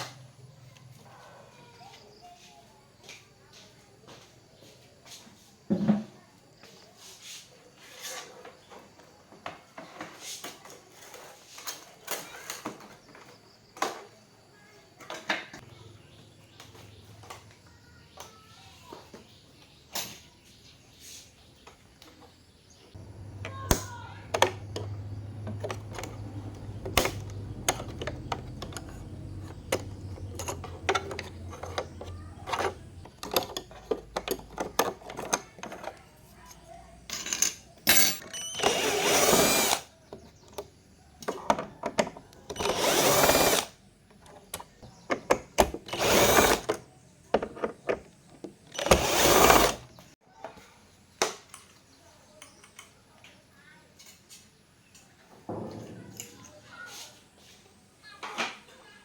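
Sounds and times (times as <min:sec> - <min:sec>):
handheld power tool running: 0:23.0 - 0:33.1, 0:38.0 - 0:39.9, 0:42.5 - 0:43.8, 0:45.8 - 0:46.8, 0:48.7 - 0:49.9
tools clicking and clattering: 0:23.0 - 0:50.0.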